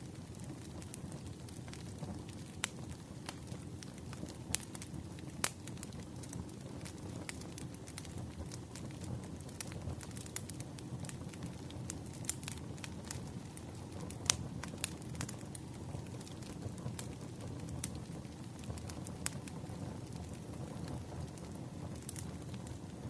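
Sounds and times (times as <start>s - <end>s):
fire crackles and pops: 0.0s - 23.0s
wood fire burning: 0.0s - 23.0s.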